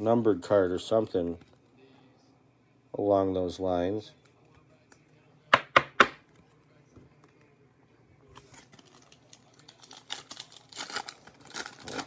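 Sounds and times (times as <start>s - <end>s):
wrapper crinkling: 8.4s - 12.0s
wrapper tearing: 8.4s - 12.0s.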